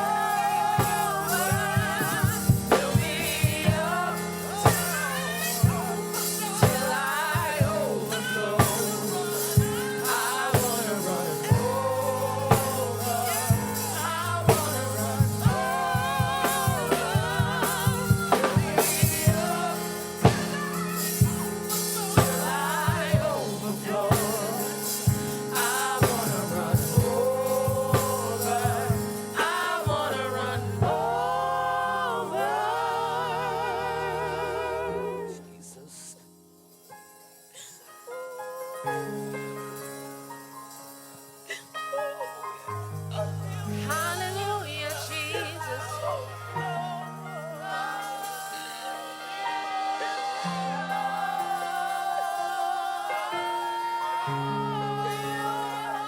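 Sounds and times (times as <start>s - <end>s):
drum kit hits: 0.0s - 31.4s
bass and keyboard: 0.0s - 35.8s, 42.6s - 48.1s
singers with vibrato: 0.0s - 36.4s, 41.4s - 56.0s.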